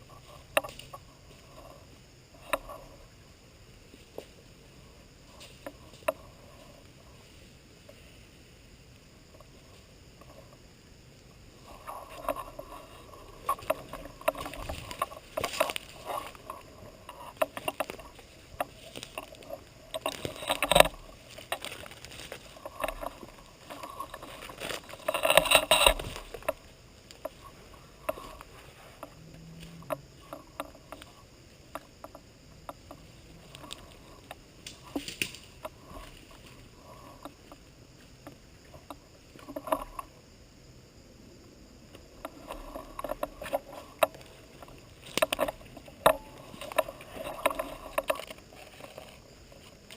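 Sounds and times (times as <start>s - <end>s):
rustling and crackling undergrowth: 0.0s - 49.9s.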